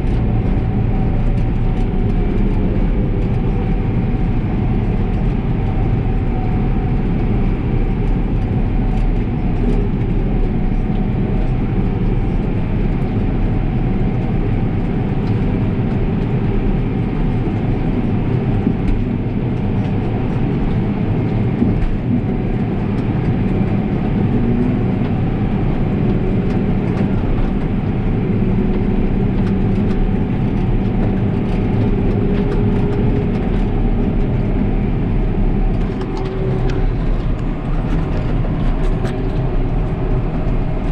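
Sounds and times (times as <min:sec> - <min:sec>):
diesel farm machinery drone: 0:00.0 - 0:40.9.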